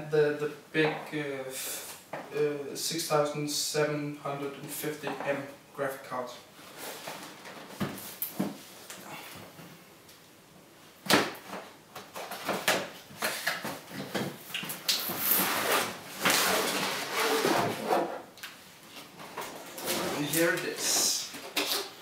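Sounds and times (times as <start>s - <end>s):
cardboard rustling and scraping: 15.0s - 18.3s, 18.9s - 22.0s.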